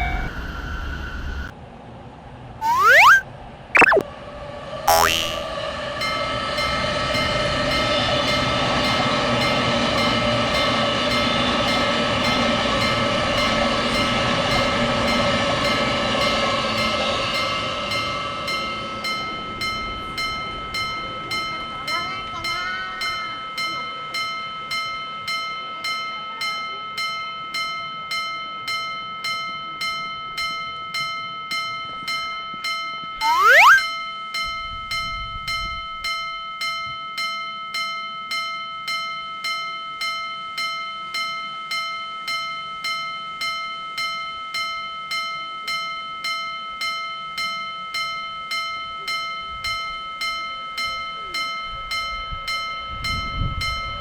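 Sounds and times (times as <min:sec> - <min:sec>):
loud rising whistle: 0:02.6 - 0:03.2, 0:33.2 - 0:33.8.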